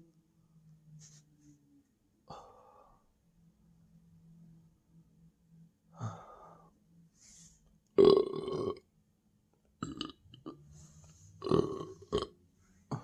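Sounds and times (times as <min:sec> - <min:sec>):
person belching: 0:08.0 - 0:08.8, 0:09.8 - 0:10.6, 0:11.4 - 0:12.3.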